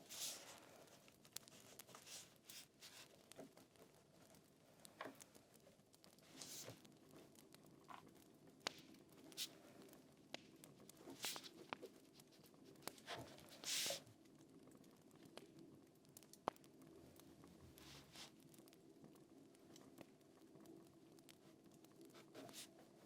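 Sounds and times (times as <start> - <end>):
soft rustles: 0.0 - 7.5, 10.7 - 14.0, 17.5 - 18.4
fire crackling: 0.0 - 23.0.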